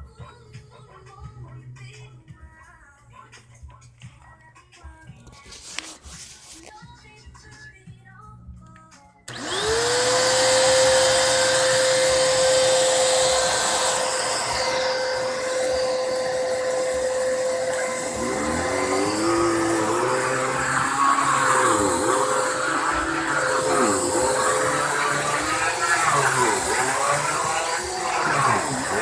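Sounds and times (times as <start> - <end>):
vacuum cleaner motor whine: 9.3 - 29.0
vacuum moving over rug: 9.3 - 29.0.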